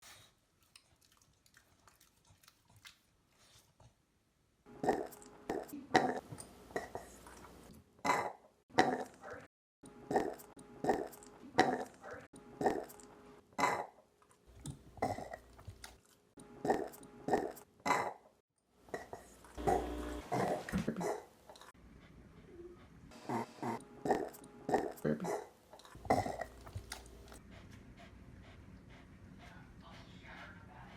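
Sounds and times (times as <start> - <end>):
dog burping: 4.8 - 6.2, 8.0 - 9.2, 10.1 - 12.0, 13.6 - 14.0, 15.0 - 15.4, 16.6 - 18.2, 23.3 - 26.9.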